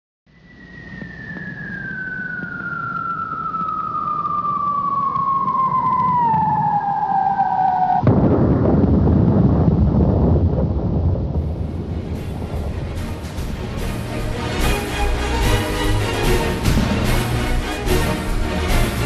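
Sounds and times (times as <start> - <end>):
whistling tone gliding down: 0.3 - 8.1
loud rush of noise: 0.3 - 19.0.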